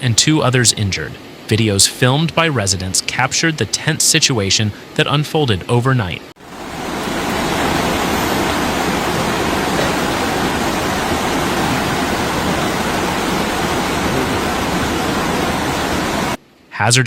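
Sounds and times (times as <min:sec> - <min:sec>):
floodwater rushing: 0:06.4 - 0:16.4.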